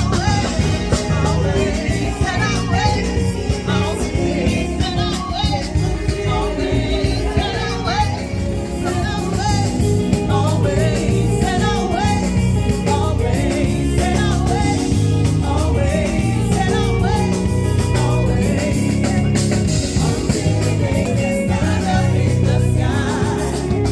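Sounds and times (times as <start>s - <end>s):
accompaniment with bass and chords: 0.0s - 23.9s
person singing gospel-style lines: 0.0s - 23.9s.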